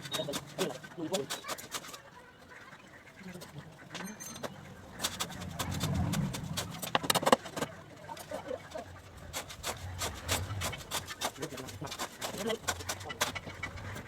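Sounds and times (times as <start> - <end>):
sharp clicks and knocks: 4.0 - 7.8.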